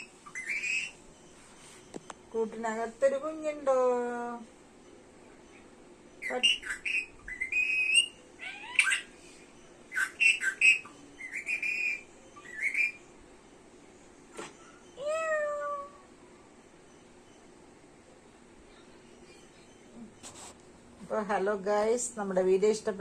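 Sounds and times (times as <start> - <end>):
parakeet chirping and whistling: 0.0 - 1.0, 6.2 - 9.2, 9.9 - 13.1.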